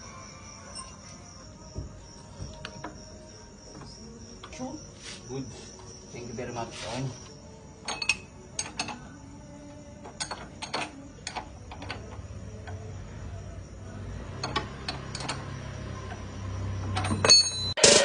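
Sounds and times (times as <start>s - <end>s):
faint high-pitched chirring: 0.0s - 17.8s.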